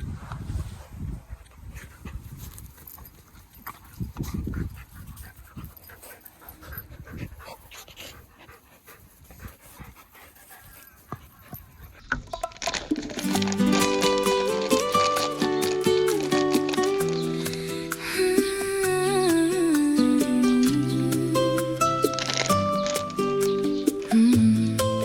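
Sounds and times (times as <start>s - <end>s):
dog panting: 1.2s - 12.2s, 13.4s - 18.2s.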